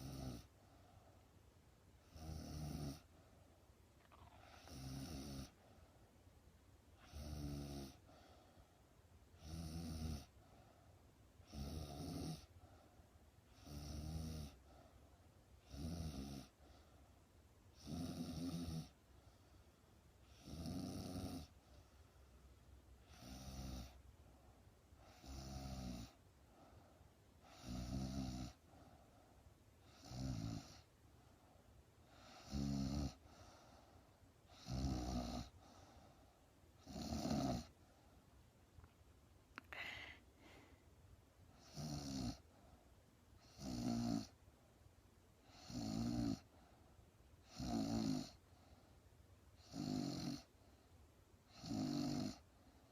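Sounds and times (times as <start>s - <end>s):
woman snoring: 0.0s - 0.5s, 2.1s - 3.1s, 4.1s - 5.6s, 7.0s - 8.0s, 9.4s - 10.3s, 11.4s - 12.5s, 13.6s - 14.6s, 15.6s - 16.5s, 17.8s - 18.9s, 20.3s - 21.5s, 23.1s - 24.0s, 25.2s - 26.2s, 27.5s - 28.6s, 29.9s - 30.8s, 32.3s - 33.2s, 34.6s - 35.5s, 36.8s - 37.7s, 39.6s - 40.7s, 41.6s - 42.4s, 43.4s - 44.3s, 45.5s - 46.5s, 47.5s - 48.4s, 49.6s - 50.5s, 51.5s - 52.4s
quiet breathing: 0.0s - 52.9s.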